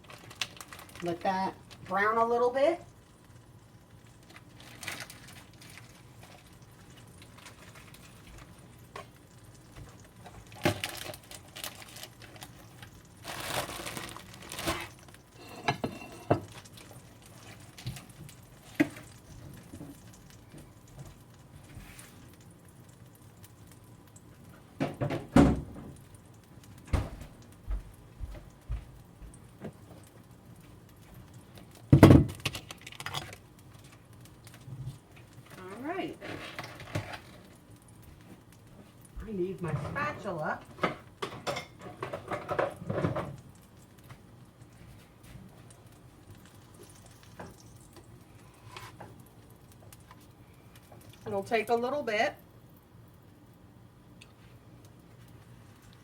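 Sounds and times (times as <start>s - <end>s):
rustling: 10.3s - 15.6s
utensils and dishes clattering: 15.4s - 16.5s.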